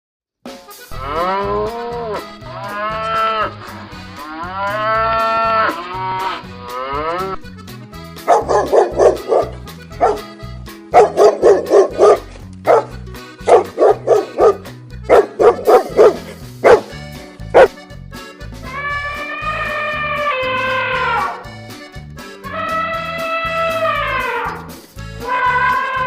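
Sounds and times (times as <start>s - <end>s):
background music: 0.5s - 26.0s
dog barking: 8.3s - 10.2s, 11.0s - 16.9s.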